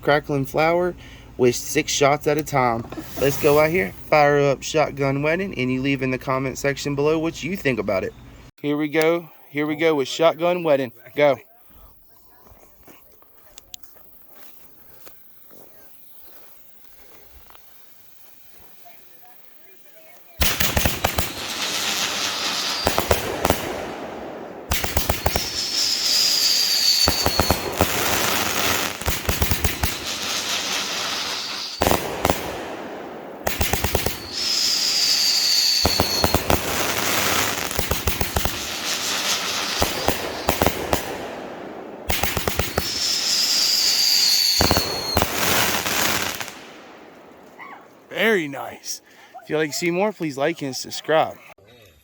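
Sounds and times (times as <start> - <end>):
falling firework whistle: 2.9 - 4.1, 20.4 - 41.4, 42.0 - 47.9
firework launch shots: 2.9 - 4.1, 20.4 - 47.6
firework crackling: 2.9 - 4.2, 20.4 - 49.0.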